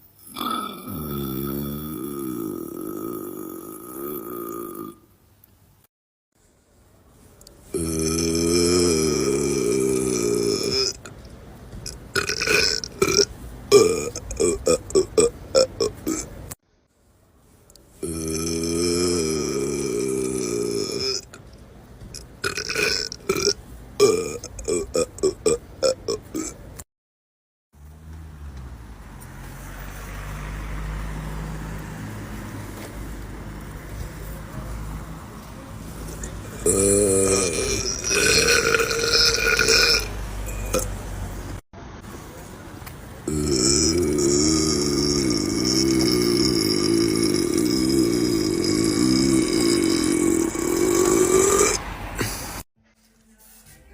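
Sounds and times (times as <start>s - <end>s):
man burping: 0.2s - 5.1s, 7.7s - 11.2s, 11.8s - 16.4s, 18.0s - 21.4s, 22.2s - 26.7s, 36.5s - 41.0s, 43.3s - 52.4s.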